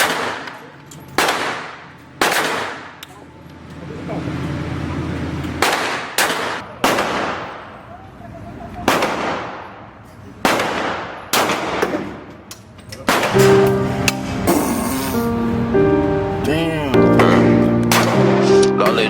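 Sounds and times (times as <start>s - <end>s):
gunshots with ringing echo: 0.0s - 3.0s, 5.6s - 7.8s, 8.8s - 12.3s, 13.1s - 14.4s, 17.3s - 18.6s.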